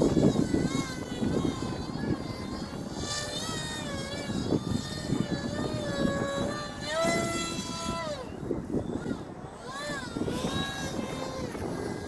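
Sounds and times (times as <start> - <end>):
model plane motor whining: 0.0 - 12.0
wind buffeting microphone: 0.0 - 12.0.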